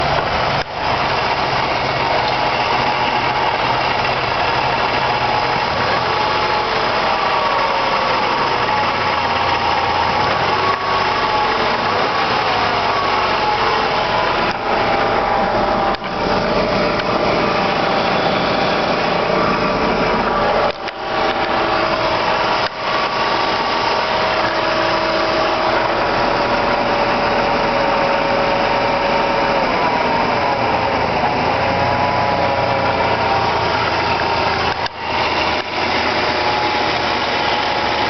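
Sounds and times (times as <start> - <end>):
vehicle running with pitch-sliding whine: 0.0 - 38.0.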